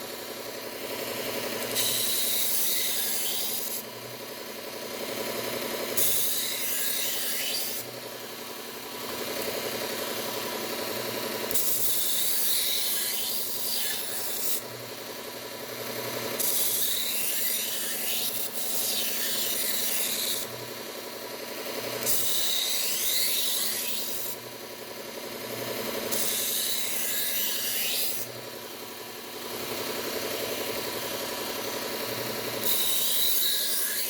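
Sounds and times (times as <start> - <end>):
belt sander rasping on steel: 0.0 - 3.9, 4.6 - 14.7, 15.9 - 24.4, 25.5 - 34.0
motor hum: 28.2 - 32.8.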